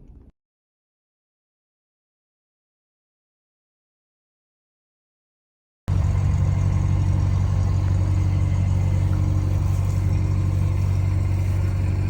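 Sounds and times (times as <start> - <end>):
engine idling drone: 5.9 - 12.0.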